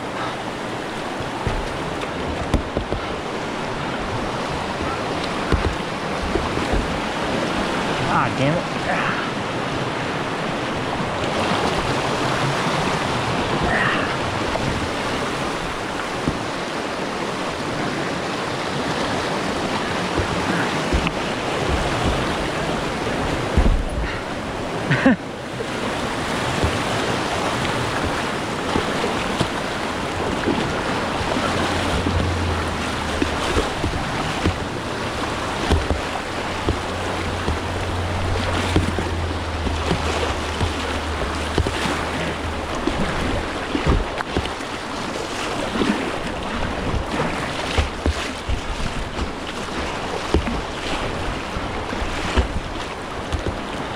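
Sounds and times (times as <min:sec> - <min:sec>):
whitewater river rushing: 0:00.0 - 0:53.9
brief thump: 0:23.6 - 0:24.0.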